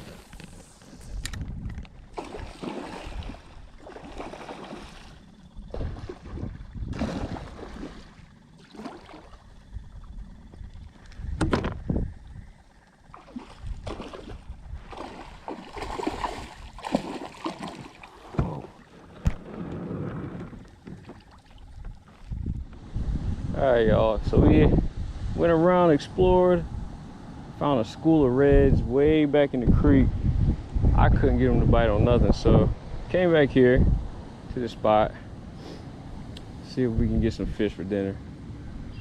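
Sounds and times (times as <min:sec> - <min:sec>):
water sloshing around kayak hull: 0:01.8 - 0:22.7
sharp knocks on hull: 0:11.4 - 0:11.8.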